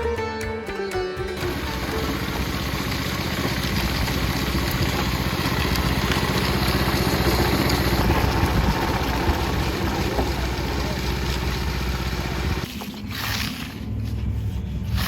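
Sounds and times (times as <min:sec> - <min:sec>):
vehicle engine running: 0:01.4 - 0:12.7.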